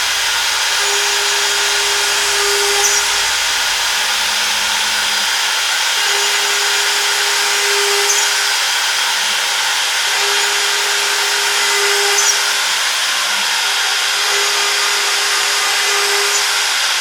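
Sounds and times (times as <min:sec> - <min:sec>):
cnc router spindle whine: 0:00.0 - 0:17.0.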